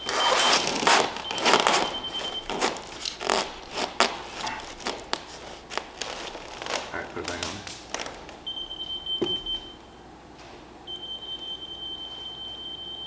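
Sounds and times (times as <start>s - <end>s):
scraping and rustling handling: 0.0s - 8.5s.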